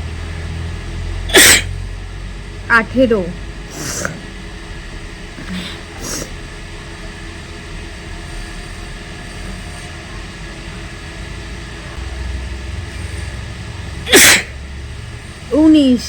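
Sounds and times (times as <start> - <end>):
low background rumble: 0.0 - 16.0
woman sneezing: 1.3 - 1.7, 3.7 - 4.3, 5.4 - 6.4, 14.1 - 14.6.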